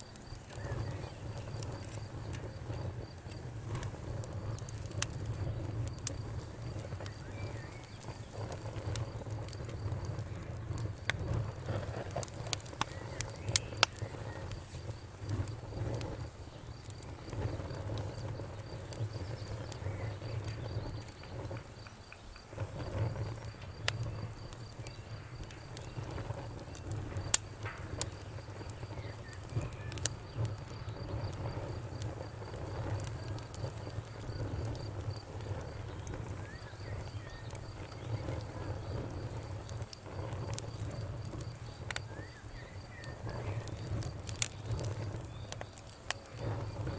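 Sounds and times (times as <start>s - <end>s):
crickets chirping: 0.0s - 46.9s
wood fire crackling: 0.0s - 46.9s
faint birds chirping: 0.3s - 2.8s, 5.3s - 9.4s, 12.4s - 31.7s, 35.5s - 46.9s.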